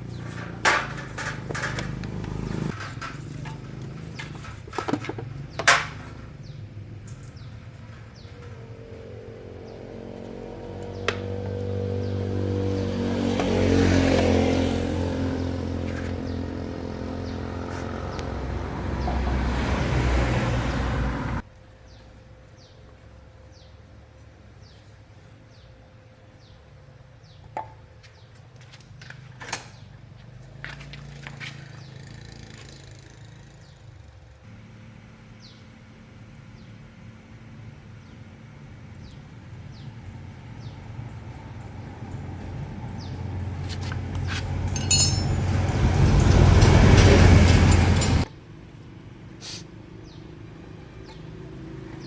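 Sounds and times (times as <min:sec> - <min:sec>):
motor vehicle engine running: 0:00.0 - 0:23.7, 0:26.4 - 0:52.0
scattered clicks and knocks: 0:00.2 - 0:06.2, 0:44.2 - 0:48.3.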